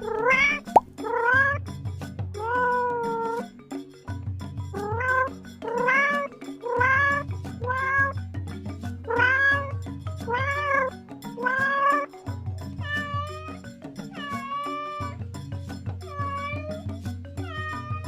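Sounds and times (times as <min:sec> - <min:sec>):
cat meowing: 0:00.0 - 0:01.6, 0:02.4 - 0:03.4, 0:04.8 - 0:08.1, 0:09.1 - 0:09.7, 0:10.3 - 0:12.1, 0:12.8 - 0:15.2, 0:16.1 - 0:16.8, 0:17.4 - 0:18.0.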